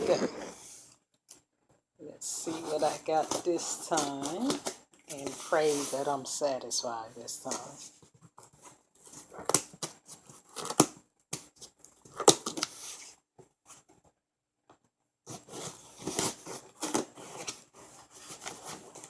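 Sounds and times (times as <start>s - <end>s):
tape tearing and rustling: 8.4s - 13.0s, 15.3s - 19.0s.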